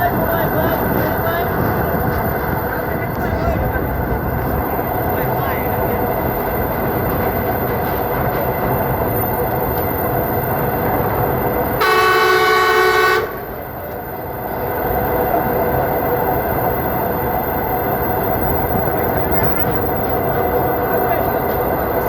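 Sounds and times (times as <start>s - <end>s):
train rumbling: 0.0s - 22.0s
train horn blast: 11.8s - 13.7s.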